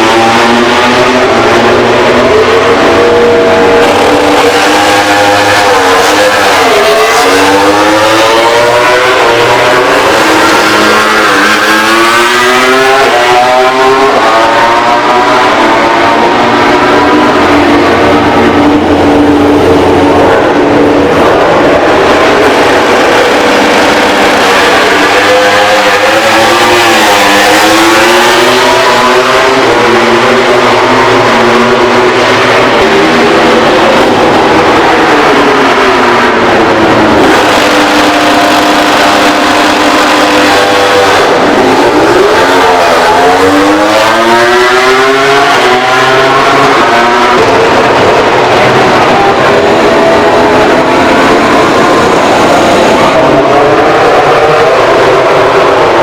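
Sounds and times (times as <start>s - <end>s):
race motorcycle engine high revs: 0.0s - 56.0s.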